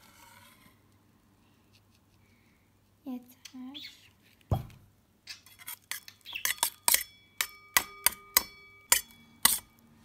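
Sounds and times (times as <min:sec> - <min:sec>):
utensil clinking against bowl: 0:05.9 - 0:09.8.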